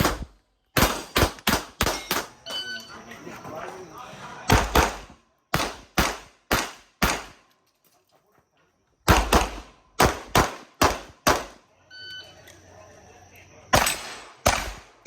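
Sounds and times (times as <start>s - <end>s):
rapid handgun shots: 0.0s - 2.4s, 4.5s - 7.4s, 9.1s - 11.6s, 13.7s - 15.0s.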